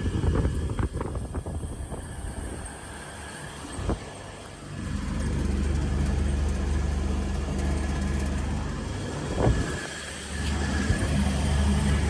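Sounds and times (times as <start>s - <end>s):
air conditioner fan hum: 0.0s - 12.0s.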